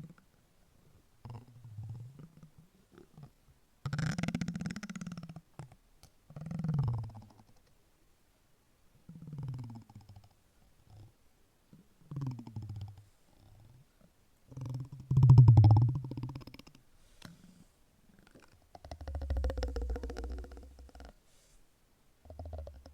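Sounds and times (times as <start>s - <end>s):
vibrating silicone croak: 3.9s - 5.4s, 14.5s - 16.8s, 18.2s - 21.2s, 22.2s - 22.9s.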